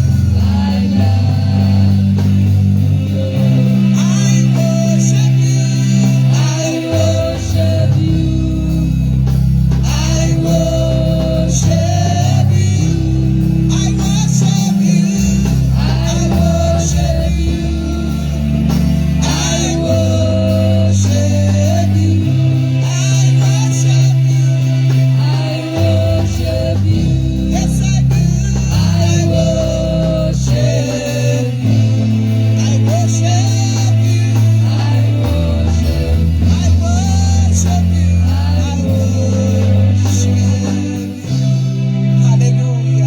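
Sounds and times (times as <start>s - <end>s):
band playing worship music: 0.0s - 43.0s
people singing: 0.0s - 43.0s.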